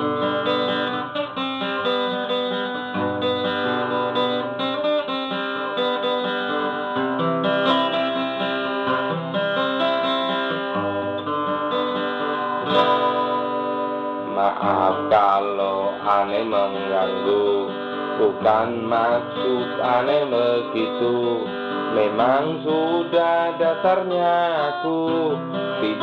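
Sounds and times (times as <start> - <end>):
plucked and strummed guitar: 0.0 - 26.0.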